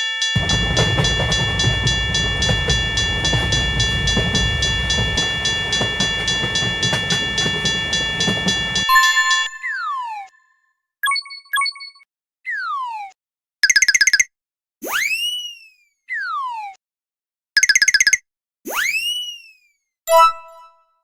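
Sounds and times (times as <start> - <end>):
level crossing bell ringing: 0.0 - 9.9
train rumbling past: 0.4 - 8.9.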